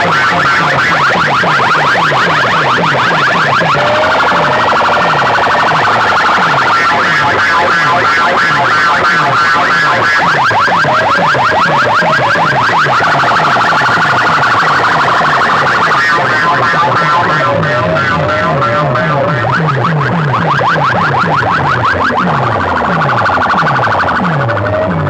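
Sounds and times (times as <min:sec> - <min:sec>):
siren-like electronic warbling: 0:00.0 - 0:25.0.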